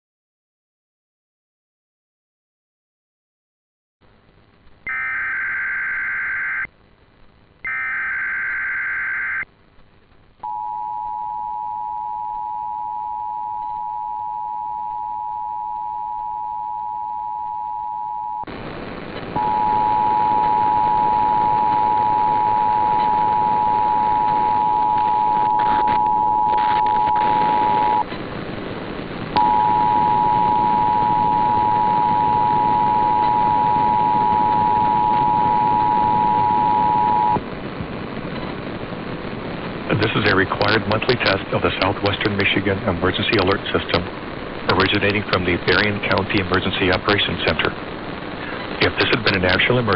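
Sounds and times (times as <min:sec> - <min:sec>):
screechy digital data bursts: 0:04.9 - 0:06.7, 0:07.7 - 0:09.4.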